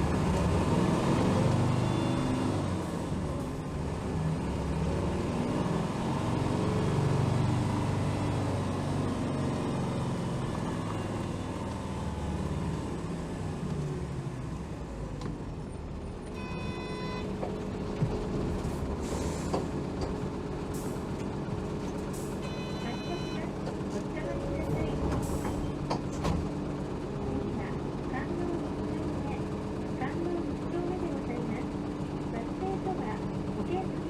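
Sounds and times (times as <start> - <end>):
diesel bus engine: 0.0 - 34.0
short electronic tone: 16.4 - 17.3, 22.4 - 23.4
air brakes hissing: 19.0 - 19.7.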